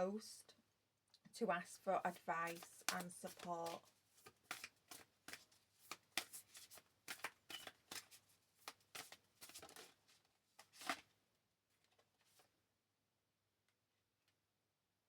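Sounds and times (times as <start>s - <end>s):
soft card flicks and taps: 2.5s - 9.6s.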